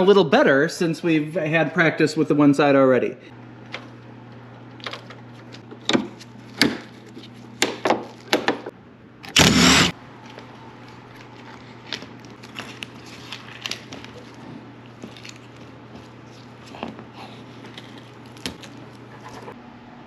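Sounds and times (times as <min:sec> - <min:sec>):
steady low hum: 0:08.7 - 0:20.0
loud noisy burst: 0:09.4 - 0:09.9.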